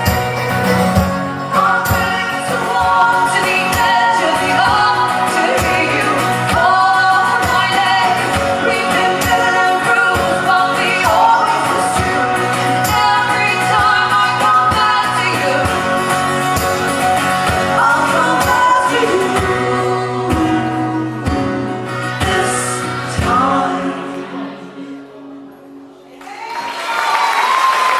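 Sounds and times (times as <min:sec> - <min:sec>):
person singing: 0:00.0 - 0:25.3
live band playing: 0:00.0 - 0:26.0.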